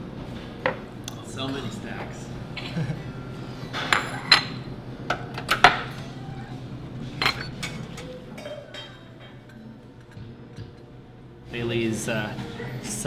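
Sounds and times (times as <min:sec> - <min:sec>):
cups and dishes clinking: 0:00.6 - 0:10.3.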